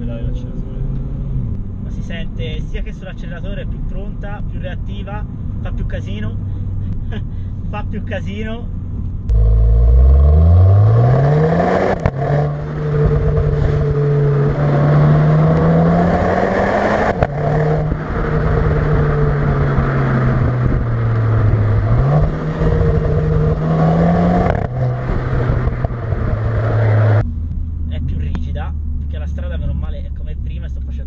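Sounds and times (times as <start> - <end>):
car engine revving hard: 9.3 - 27.2.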